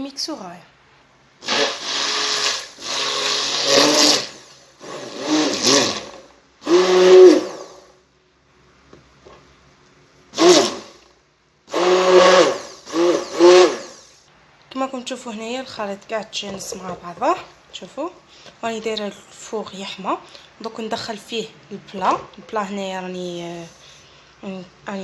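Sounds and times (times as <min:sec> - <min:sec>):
electric mixer whirring: 0:01.4 - 0:07.8, 0:10.4 - 0:11.0, 0:11.7 - 0:14.1.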